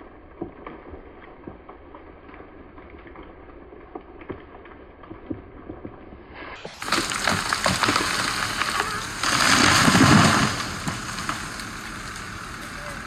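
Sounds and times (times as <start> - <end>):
branches cracking and snapping: 6.6 - 13.0
tree crashing with deep thud: 6.6 - 13.0.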